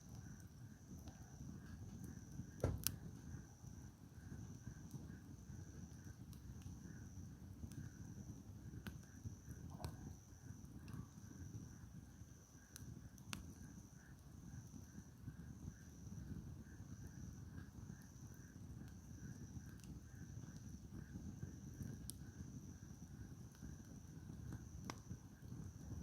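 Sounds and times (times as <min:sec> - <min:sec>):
crackles and pops from logs: 0:00.0 - 0:03.8, 0:08.7 - 0:10.2, 0:12.0 - 0:14.0, 0:16.9 - 0:26.0
campfire burning: 0:00.0 - 0:26.0.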